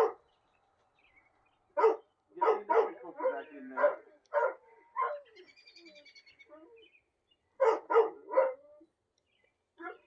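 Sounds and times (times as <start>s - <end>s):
dog barking: 0.0s - 0.2s, 1.8s - 5.3s, 7.6s - 8.8s.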